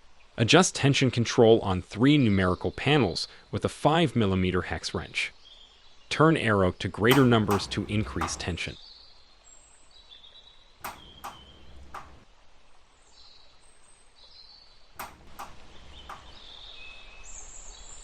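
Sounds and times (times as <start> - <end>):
hex wrench clicking hinge: 7.1 - 8.7, 10.8 - 12.2, 15.0 - 16.4.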